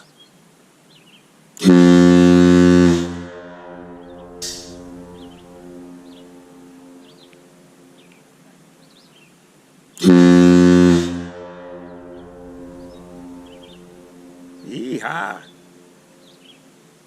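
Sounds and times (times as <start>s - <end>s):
ship horn blast: 1.6s - 8.1s, 10.0s - 16.5s.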